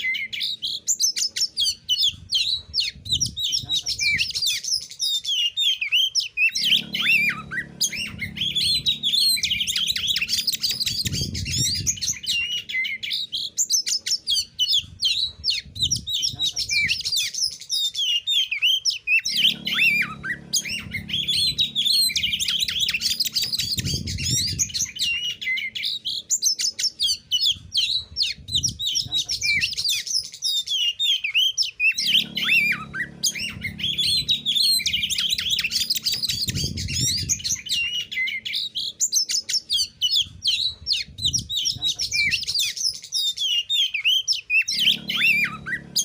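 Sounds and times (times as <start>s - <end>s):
bird singing chirps and trills: 0.0s - 46.0s
low hum: 6.4s - 13.4s, 19.2s - 26.2s, 31.9s - 38.8s, 44.6s - 46.0s.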